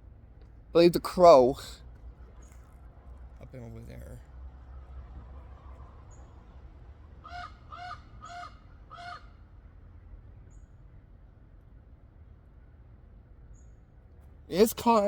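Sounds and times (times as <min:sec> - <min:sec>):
crow cawing: 0:07.2 - 0:09.3.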